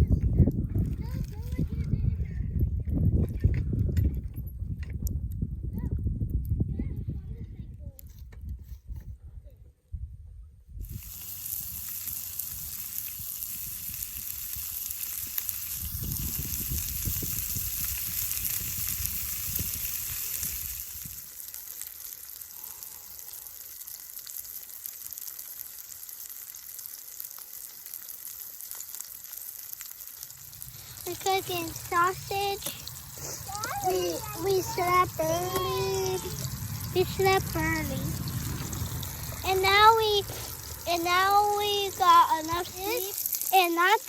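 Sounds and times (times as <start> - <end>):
sausages sizzling: 10.8 - 44.0
low rumble: 30.2 - 42.0.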